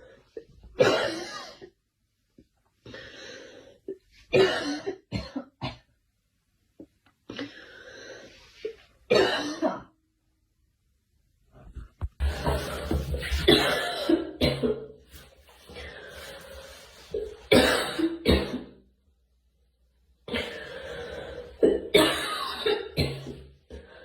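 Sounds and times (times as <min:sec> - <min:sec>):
girl coughing: 0:00.8 - 0:01.6, 0:04.4 - 0:05.8, 0:09.1 - 0:09.9, 0:13.5 - 0:14.8, 0:17.5 - 0:18.7, 0:21.6 - 0:23.3.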